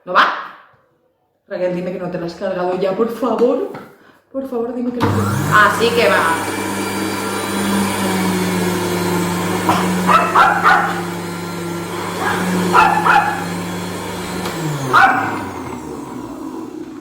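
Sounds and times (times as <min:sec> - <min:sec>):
juicer motor humming: 0:05.0 - 0:17.0.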